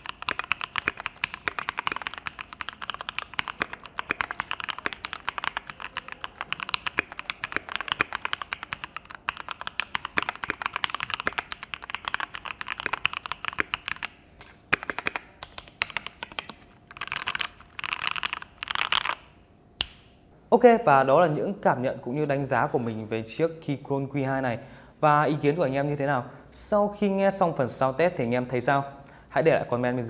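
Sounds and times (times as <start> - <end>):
mechanical keyboard typing: 0.0 - 19.3.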